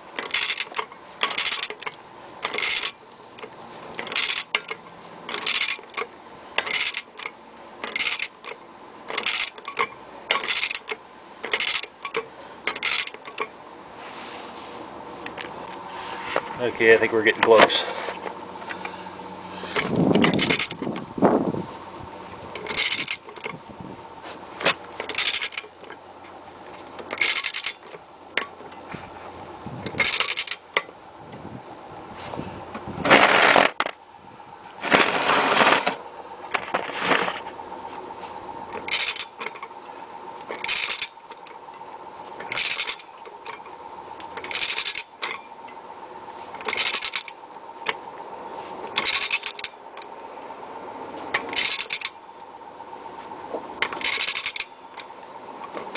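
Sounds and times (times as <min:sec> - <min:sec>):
torque wrench ratchet clattering: 0:00.2 - 0:03.0, 0:04.0 - 0:13.5, 0:19.7 - 0:21.0, 0:22.5 - 0:23.6, 0:25.0 - 0:25.7, 0:27.0 - 0:28.5, 0:29.8 - 0:30.6, 0:38.8 - 0:39.7, 0:40.5 - 0:41.2, 0:42.4 - 0:43.6, 0:44.4 - 0:45.5, 0:46.6 - 0:48.0, 0:48.9 - 0:49.8, 0:51.3 - 0:52.2, 0:53.8 - 0:55.1.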